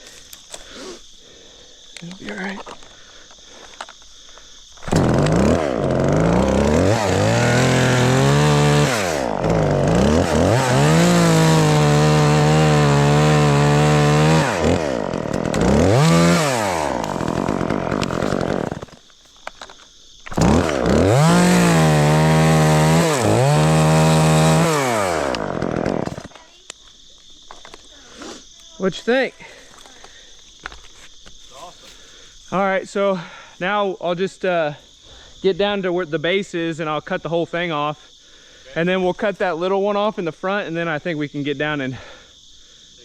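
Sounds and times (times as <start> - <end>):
chainsaw revving and cutting wood: 4.8 - 19.1, 20.3 - 26.3.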